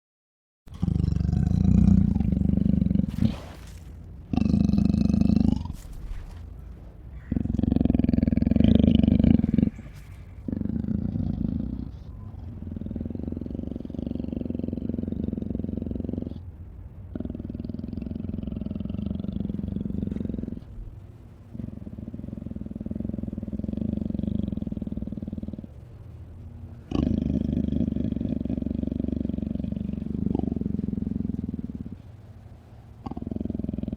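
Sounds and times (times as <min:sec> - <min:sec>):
creature growling: 0:00.7 - 0:06.5, 0:07.1 - 0:16.4
creature roaring: 0:00.8 - 0:06.4
breathy hiss: 0:00.8 - 0:16.4.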